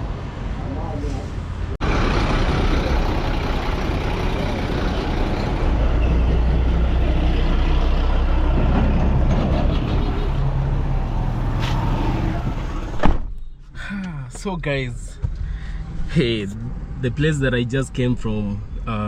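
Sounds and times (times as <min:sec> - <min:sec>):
road traffic: 0:00.0 - 0:19.0
vehicle engine running: 0:01.8 - 0:09.1.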